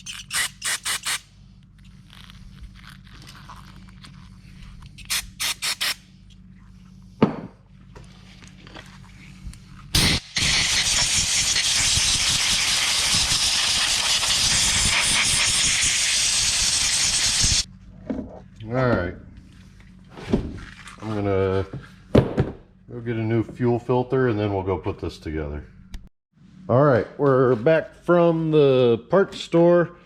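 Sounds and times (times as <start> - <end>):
air blow gun blasts: 10.0 - 17.7
long hiss of air: 10.0 - 17.7.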